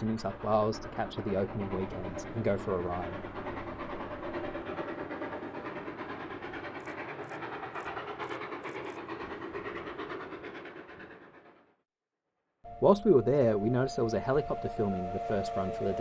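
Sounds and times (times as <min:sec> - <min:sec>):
train rumbling and clattering: 0:00.0 - 0:11.7.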